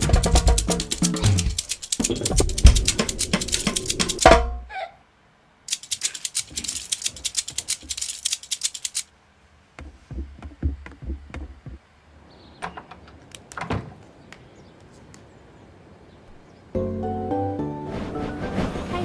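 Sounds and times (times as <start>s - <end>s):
rapid sharp clicks: 0.0s - 4.4s, 5.7s - 9.1s
dull knocks: 9.7s - 11.8s.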